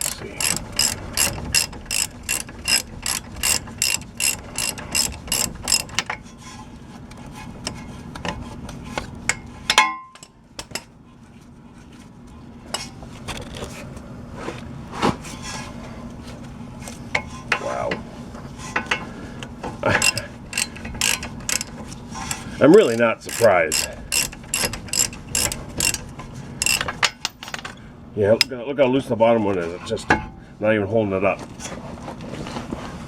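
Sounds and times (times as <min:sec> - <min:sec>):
ratchet wrench clicking: 0:00.0 - 0:06.1, 0:20.0 - 0:27.1.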